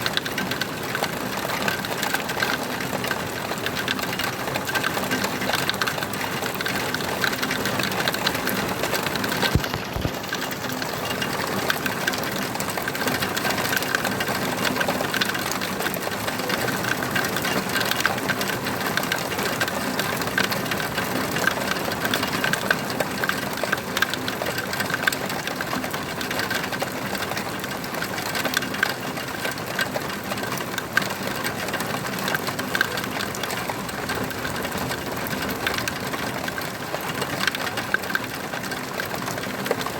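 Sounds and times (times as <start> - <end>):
rain patter: 0.0 - 39.9.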